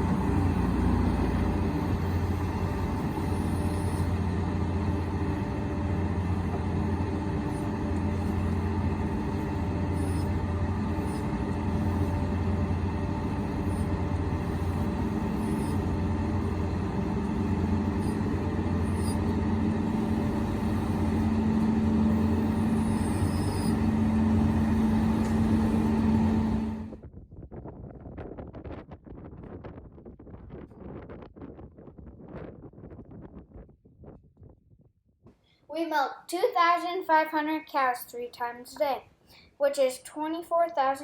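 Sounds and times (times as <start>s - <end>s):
vehicle engine humming: 0.0s - 27.0s.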